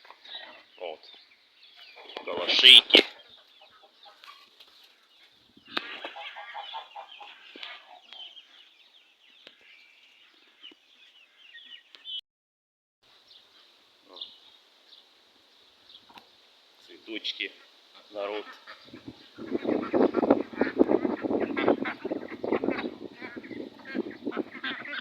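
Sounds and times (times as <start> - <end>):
chickens clucking: 0.0 - 11.8, 16.0 - 16.4, 17.4 - 25.0.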